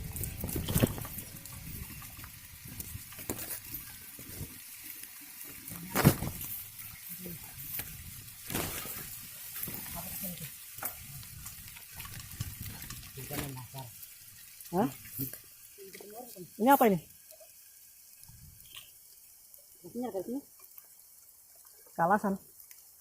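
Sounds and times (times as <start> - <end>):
bicycle rattles and knocks: 0.0 - 4.6, 7.6 - 13.8
bicycle tyres crackling on gravel: 0.0 - 23.0.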